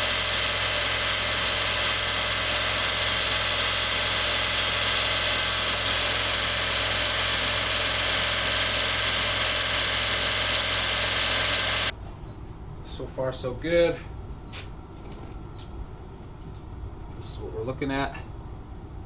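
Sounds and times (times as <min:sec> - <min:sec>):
belt grinder grinding steel: 0:00.0 - 0:11.9
low motor hum: 0:00.0 - 0:11.9.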